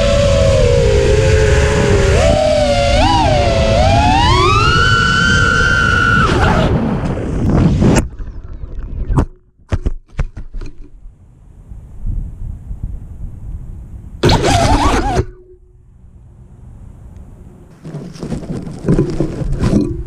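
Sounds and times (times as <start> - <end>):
drone motors whining: 0.0 - 7.2, 14.2 - 15.8
sharp knocks and clatters: 17.8 - 20.0.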